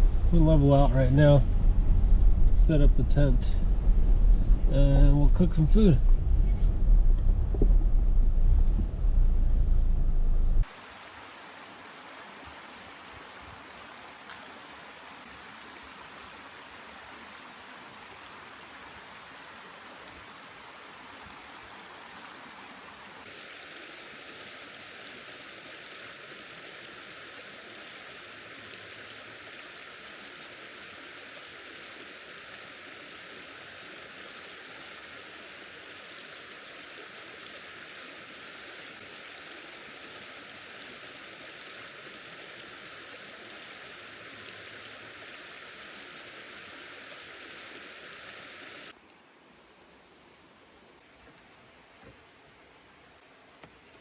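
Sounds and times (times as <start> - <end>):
low vehicle rumble: 0.0 - 10.7
rushing water hiss: 10.6 - 49.9.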